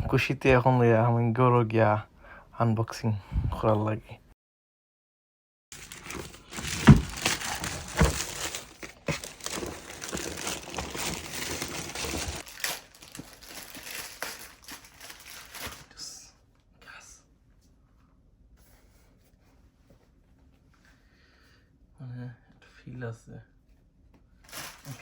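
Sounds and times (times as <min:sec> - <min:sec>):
packaging crinkling and tearing: 0:05.7 - 0:16.0, 0:24.5 - 0:25.0.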